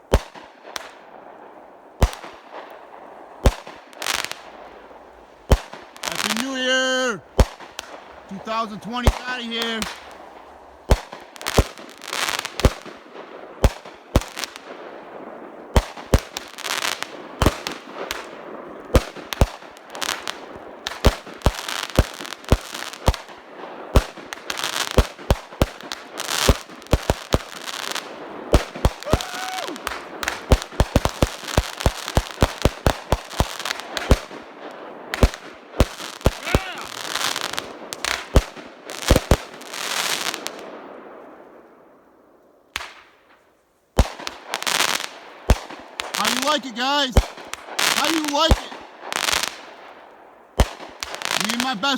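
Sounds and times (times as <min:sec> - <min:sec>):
fireworks crackling: 0:00.0 - 0:41.3, 0:42.7 - 0:51.9
fireworks banging: 0:05.4 - 0:13.1, 0:23.9 - 0:40.6, 0:44.0 - 0:49.6, 0:50.6 - 0:51.9.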